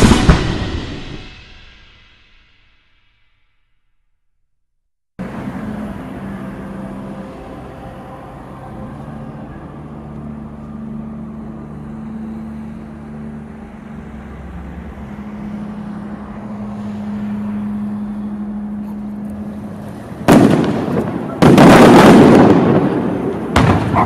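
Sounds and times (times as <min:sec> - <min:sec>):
low mechanical hum: 0:05.4 - 0:21.3.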